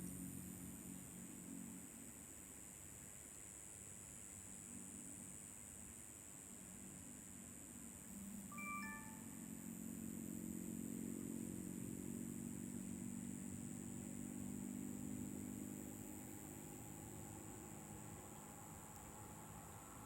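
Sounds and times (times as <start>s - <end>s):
faint vehicle engine hum: 0.0s - 20.0s
short high tones: 8.5s - 9.3s.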